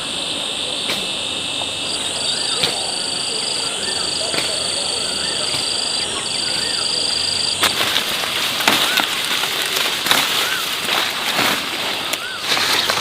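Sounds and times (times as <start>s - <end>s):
rustling crackling with snaps: 7.6s - 13.0s.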